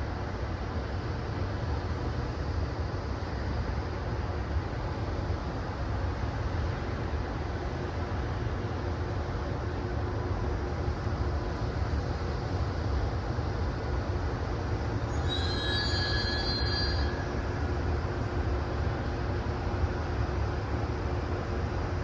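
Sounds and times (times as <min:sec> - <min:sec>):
freight train rumbling on rails: 0:00.0 - 0:22.0
wheels squealing against rail: 0:15.0 - 0:17.6.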